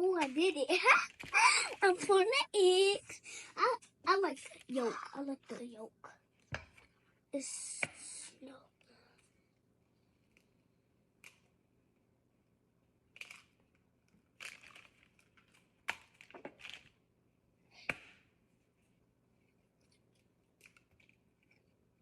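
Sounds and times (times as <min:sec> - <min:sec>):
rustling and crinkling: 0:13.2 - 0:17.0.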